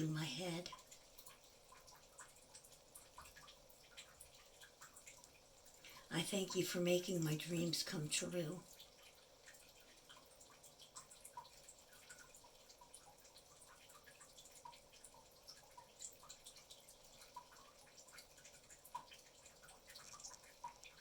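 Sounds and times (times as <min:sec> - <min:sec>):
small ticks: 0:00.7 - 0:06.0, 0:08.7 - 0:21.0.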